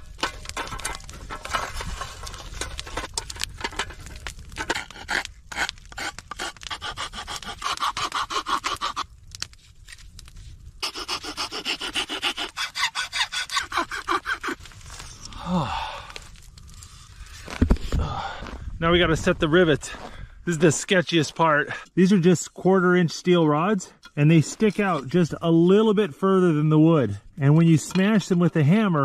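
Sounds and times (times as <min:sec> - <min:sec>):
hand tool rasping strokes: 0:04.6 - 0:09.1, 0:10.8 - 0:14.7.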